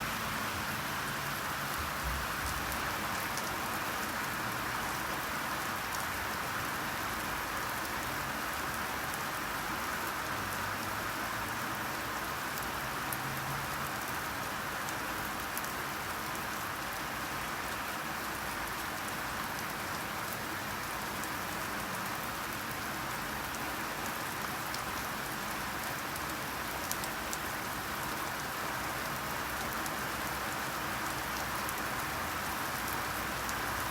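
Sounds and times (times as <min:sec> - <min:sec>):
steady rainfall: 0:00.0 - 0:33.9
raindrop ticks: 0:25.4 - 0:27.4.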